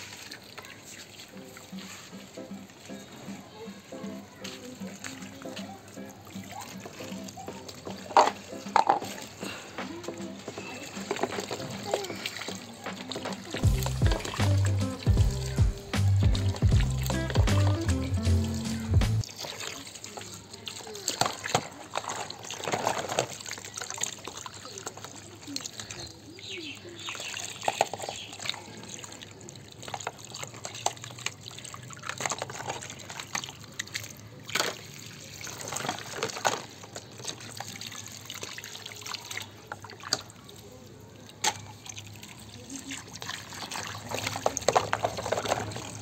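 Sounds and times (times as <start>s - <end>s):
water trickling and splashing: 0.0s - 46.0s
plastic toys knocking and clicking: 7.6s - 15.7s, 21.1s - 23.8s, 27.5s - 28.4s, 32.0s - 33.8s, 35.5s - 37.5s, 44.0s - 46.0s.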